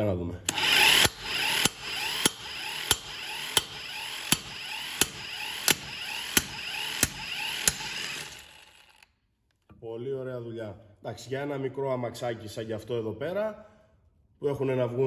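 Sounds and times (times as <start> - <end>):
impact wrench motor whining: 0.5 - 9.1.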